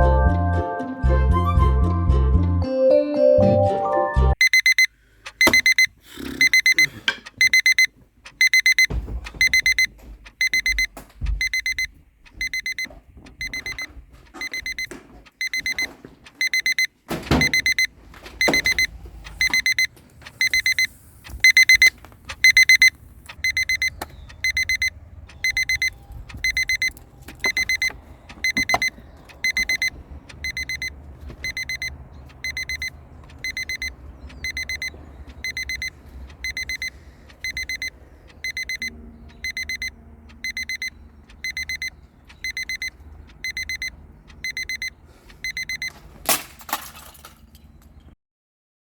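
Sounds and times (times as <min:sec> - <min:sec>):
alarm clock beeping: 0:04.2 - 0:45.9
dull thumps: 0:08.6 - 0:16.2.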